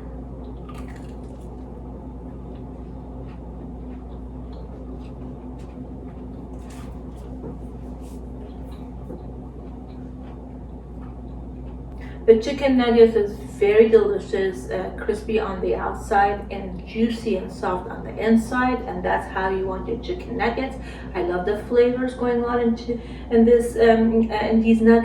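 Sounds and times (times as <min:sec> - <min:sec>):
low electrical hum: 0:00.0 - 0:25.0
person chewing crispy food: 0:00.4 - 0:11.8.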